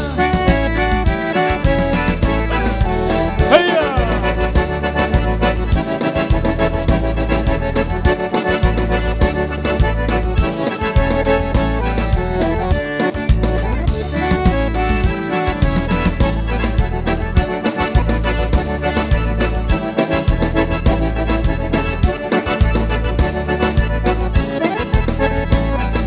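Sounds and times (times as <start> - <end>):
accordion playing folk music: 0.0 - 26.0
steady bass beat: 1.7 - 10.3.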